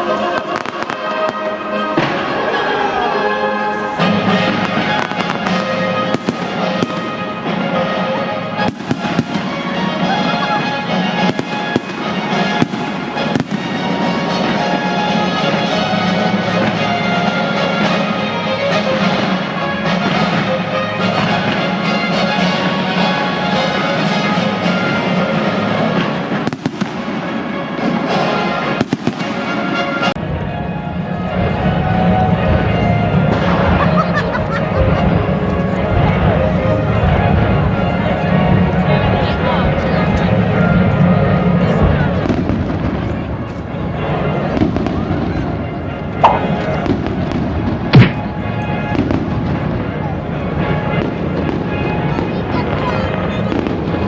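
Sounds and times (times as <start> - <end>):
fireworks bangs and crackles: 0.1 - 2.7, 4.0 - 54.0.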